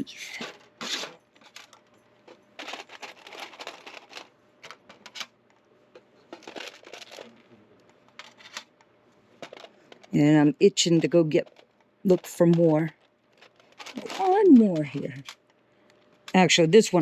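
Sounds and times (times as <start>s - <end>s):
packaging crinkling: 0.7s - 5.3s, 6.3s - 8.8s, 11.4s - 16.4s.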